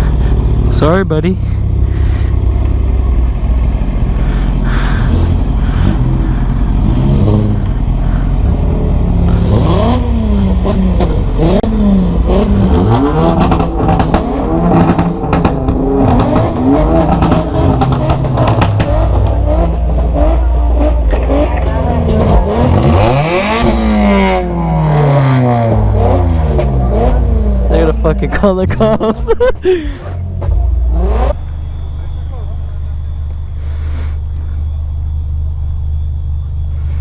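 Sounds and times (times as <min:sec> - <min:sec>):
motorcycle engine revving: 0:00.0 - 0:28.1.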